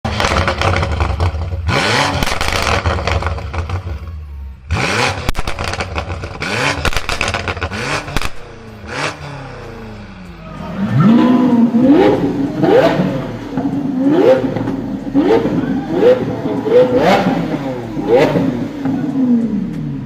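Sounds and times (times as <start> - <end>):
exhaust pops and crackles: 0.0 - 3.9, 5.2 - 8.5
car engine revving: 0.1 - 20.0.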